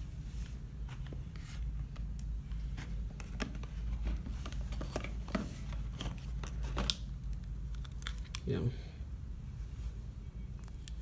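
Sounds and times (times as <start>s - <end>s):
steady low hum: 0.0s - 11.0s
packaging clicks and rustles: 1.9s - 8.6s.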